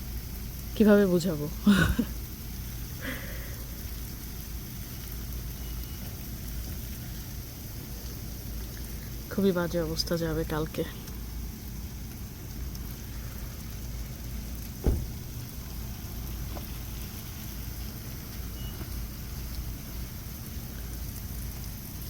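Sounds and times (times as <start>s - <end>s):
freezing rain pattering hiss: 0.0s - 22.0s
low rumble: 12.3s - 16.4s
sharp knock: 14.8s - 15.2s.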